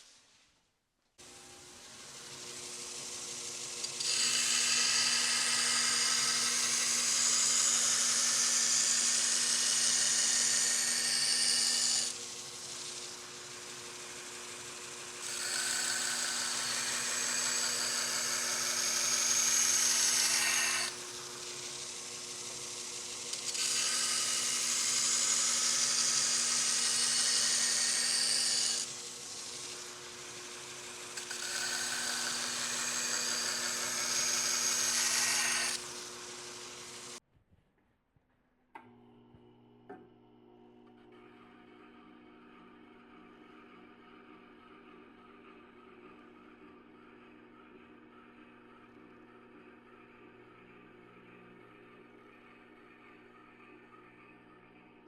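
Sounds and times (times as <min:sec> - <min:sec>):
sharpening machine hum: 0:01.2 - 0:37.2.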